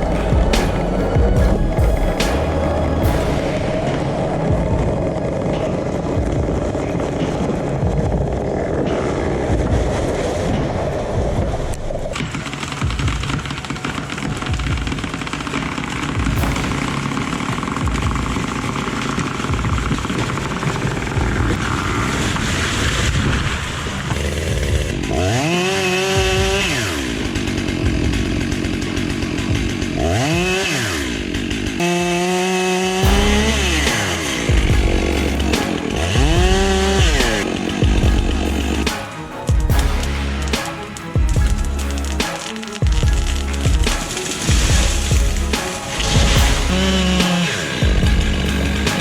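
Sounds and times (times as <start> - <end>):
chainsaw revving: 12.2 - 23.0, 24.1 - 49.0
chainsaw cutting wood: 24.1 - 49.0.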